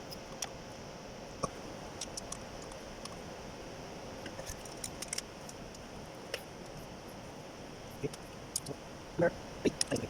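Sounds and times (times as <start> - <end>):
steady background hum: 0.0 - 10.0.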